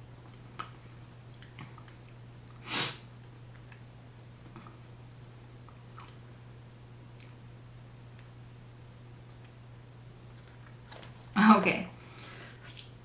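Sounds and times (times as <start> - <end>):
steady low hum: 0.0 - 13.0
chewing and mouth clicks: 0.3 - 2.2, 3.5 - 6.2, 8.2 - 9.6.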